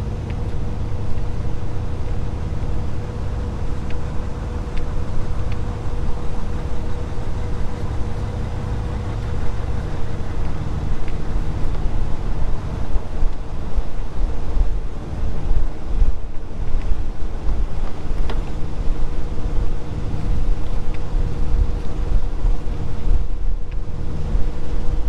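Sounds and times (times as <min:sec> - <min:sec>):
engine idling: 0:00.0 - 0:15.6
constant hum: 0:00.0 - 0:25.0.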